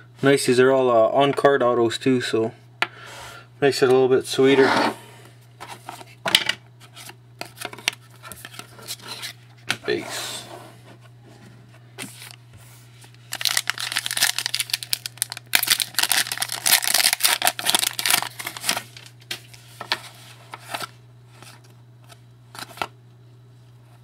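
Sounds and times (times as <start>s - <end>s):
faint electrical hum: 0.0s - 24.0s
cards rustling and clicking: 13.0s - 22.9s
card pack wrapper crinkling: 13.1s - 19.6s.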